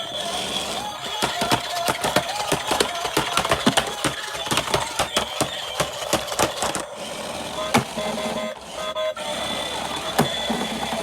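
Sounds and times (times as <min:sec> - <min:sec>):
hard plastic toy parts clicking: 0:01.0 - 0:06.9.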